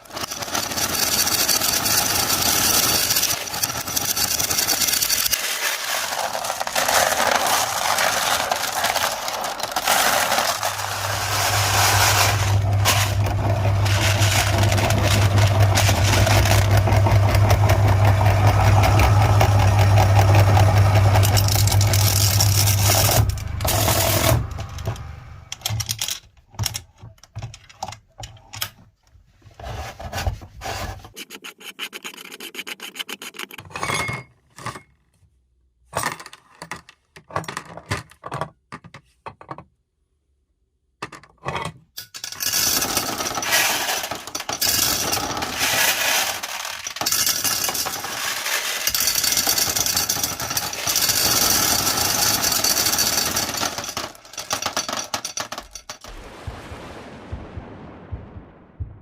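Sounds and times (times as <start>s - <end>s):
glass marbles grinding and crunching: 0.0s - 17.5s, 21.0s - 24.3s, 42.0s - 56.0s
clicks and rattles: 0.0s - 29.2s, 31.0s - 34.9s, 41.0s - 56.1s
meat grinder motor humming: 6.1s - 25.5s.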